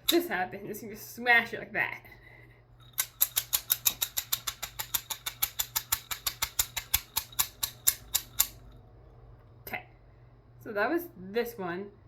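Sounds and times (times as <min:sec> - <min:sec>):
plastic fidget toy clicking: 0:02.9 - 0:08.6.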